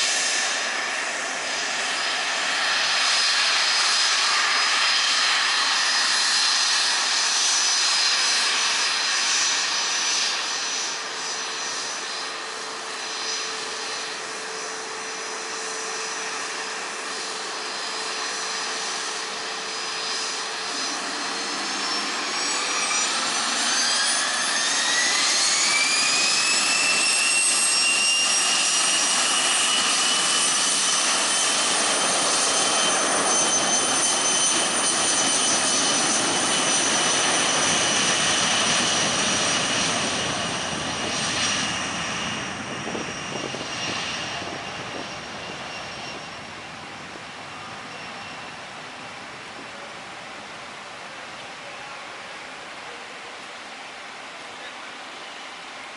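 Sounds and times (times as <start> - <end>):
jet engines spooling up: 0.0 - 50.8.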